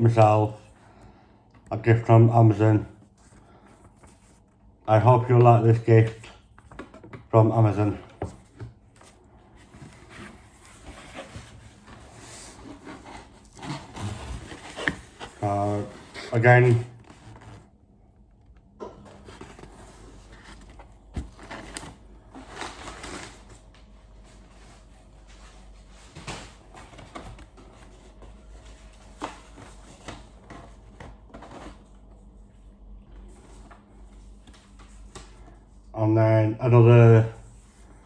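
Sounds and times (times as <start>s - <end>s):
packaging rustling: 8.0s - 17.8s, 19.1s - 31.9s.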